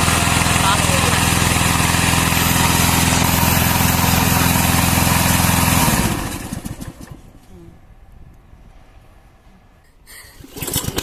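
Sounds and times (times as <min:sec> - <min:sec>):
lawn mower engine running: 0:00.0 - 0:07.5, 0:10.4 - 0:11.0.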